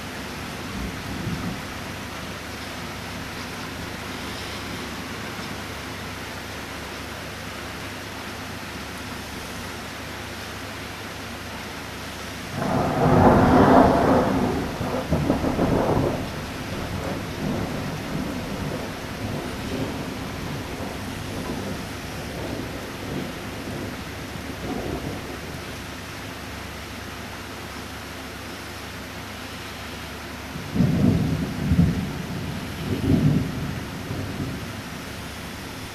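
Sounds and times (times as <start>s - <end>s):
steady rain: 0.0s - 35.9s
thunderclap rumbling: 0.5s - 2.3s, 12.5s - 25.9s, 30.6s - 35.9s.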